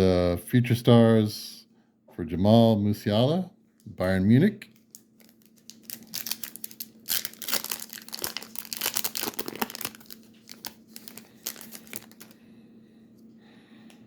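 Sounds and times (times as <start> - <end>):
plastic wrapper crinkling: 4.7 - 12.4.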